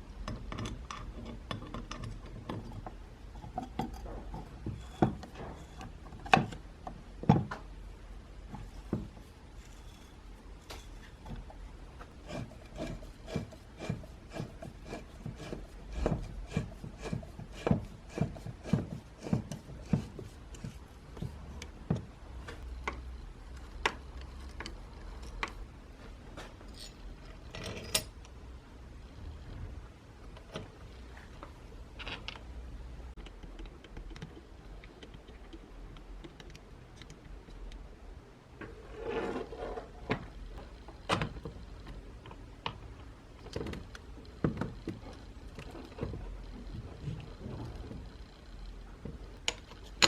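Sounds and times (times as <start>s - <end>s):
rubbing and scraping: 8.4s - 21.6s, 38.7s - 40.2s
metal parts clicking and knocking: 26.6s - 28.2s.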